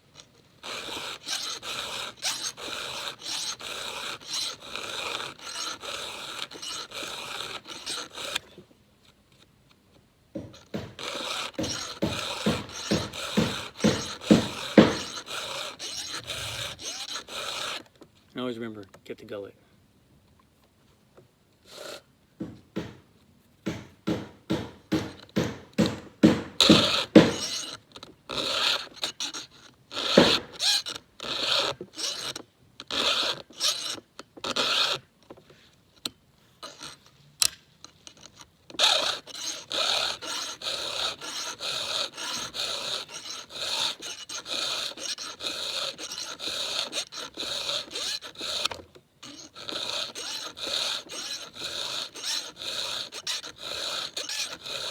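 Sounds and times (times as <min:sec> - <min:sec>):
file rasping on saw chain: 0:00.6 - 0:08.5, 0:10.4 - 0:17.9, 0:21.7 - 0:22.0, 0:23.7 - 0:35.0, 0:36.6 - 0:37.0, 0:38.0 - 0:54.9.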